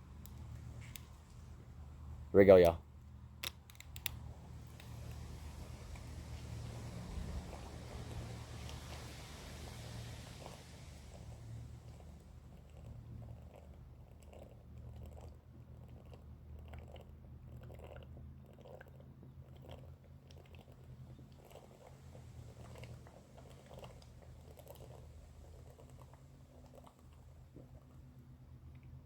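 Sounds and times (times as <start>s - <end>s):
low steady hum: 0.0s - 29.0s
person gulping a drink: 11.1s - 28.1s.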